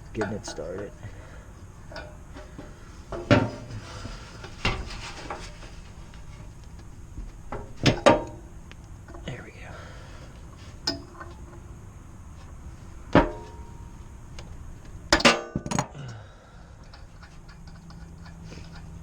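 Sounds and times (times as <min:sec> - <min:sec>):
metal tools clinking on metal: 0:00.0 - 0:01.2, 0:16.8 - 0:19.0.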